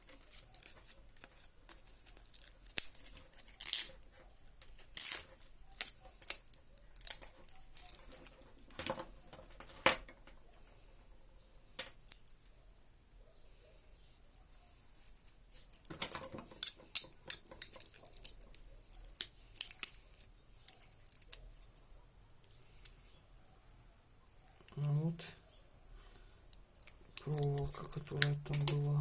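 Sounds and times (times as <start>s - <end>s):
hands scraping and clicking parts: 0.0s - 10.3s, 15.2s - 25.5s, 26.3s - 29.0s.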